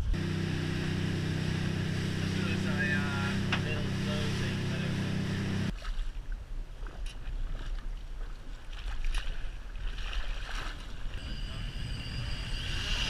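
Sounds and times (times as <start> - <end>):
engine humming: 0.0 - 5.7, 11.2 - 13.0
sea water moving around boat: 0.0 - 13.0
wind on microphone: 9.6 - 13.0.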